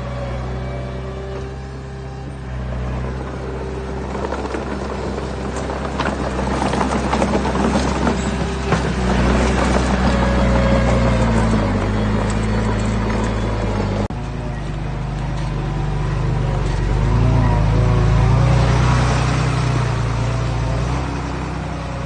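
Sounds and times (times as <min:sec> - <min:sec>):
diesel engine running: 0:00.0 - 0:22.0
clattering and scraping: 0:04.0 - 0:15.6.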